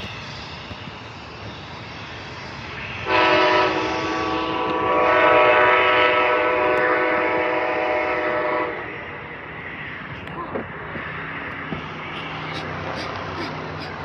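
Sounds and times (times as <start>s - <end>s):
train horn chord: 3.0s - 9.2s.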